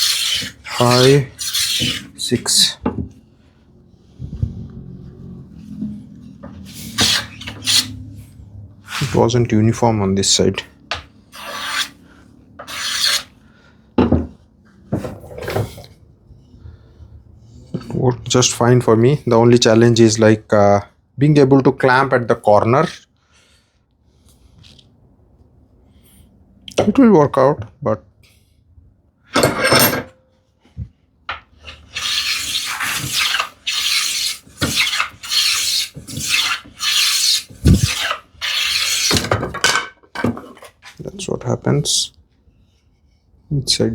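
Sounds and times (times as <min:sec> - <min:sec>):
hand plane shaving wood: 0:00.0 - 0:02.7, 0:05.8 - 0:08.0, 0:08.8 - 0:09.5, 0:11.3 - 0:12.0, 0:12.6 - 0:13.3, 0:31.6 - 0:39.3.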